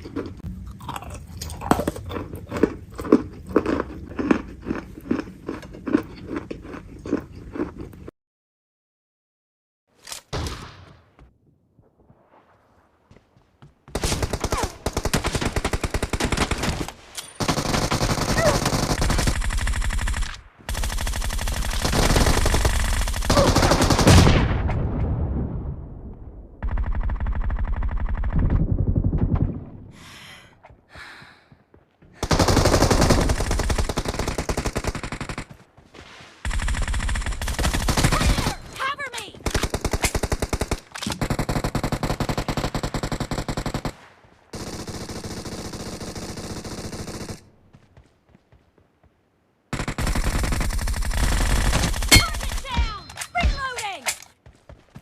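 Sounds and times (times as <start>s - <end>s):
rapid automatic gunfire: 14.0s - 24.3s, 26.6s - 29.2s, 32.2s - 35.6s, 36.5s - 38.5s, 39.4s - 44.0s, 44.6s - 47.4s, 49.8s - 52.7s.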